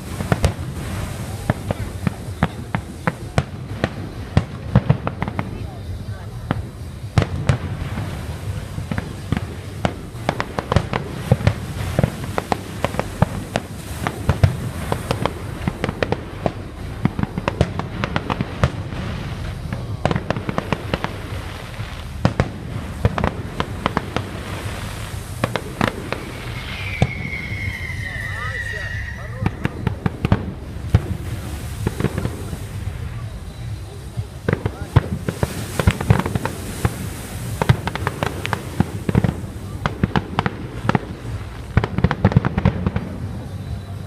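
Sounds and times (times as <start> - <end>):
fireworks bangs and crackles: 0.0 - 44.0
low rumble: 0.0 - 44.0
high whistle sliding down: 26.2 - 29.8.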